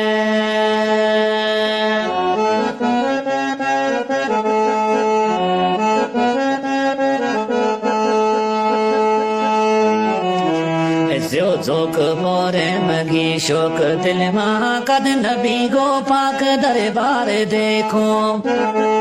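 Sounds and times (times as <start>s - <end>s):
free-reed instrument melody over drone: 0.0s - 19.0s.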